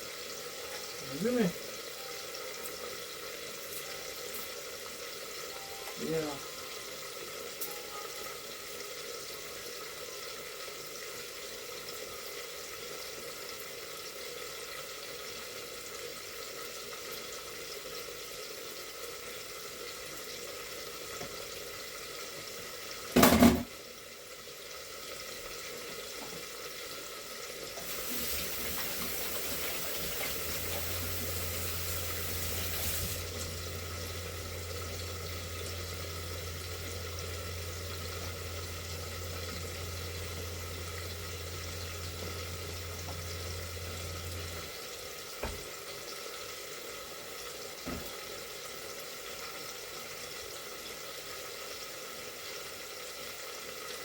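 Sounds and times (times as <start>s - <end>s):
sink tap running: 22.4s - 23.8s, 27.5s - 46.1s
steady background hum: 28.1s - 45.6s
low hum: 30.5s - 44.8s.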